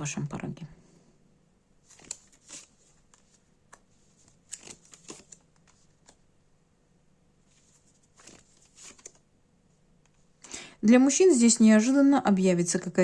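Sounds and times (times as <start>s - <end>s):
cards flicking and tapping: 1.9s - 6.2s, 8.0s - 9.2s.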